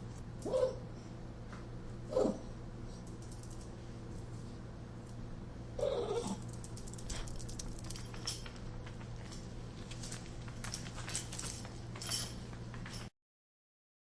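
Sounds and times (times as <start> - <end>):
steady low hum: 0.0 - 13.1
dog whining: 0.4 - 0.9, 2.1 - 2.5, 5.8 - 6.4.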